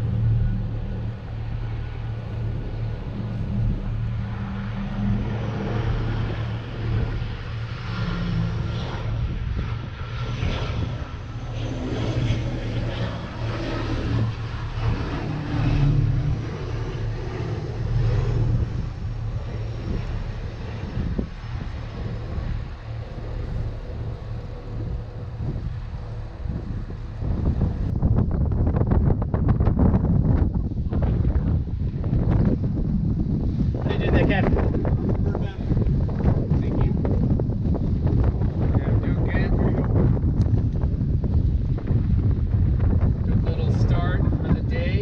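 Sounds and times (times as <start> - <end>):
boat engines droning: 0.0 - 28.8
water noise: 0.0 - 44.0
wind: 0.0 - 45.0.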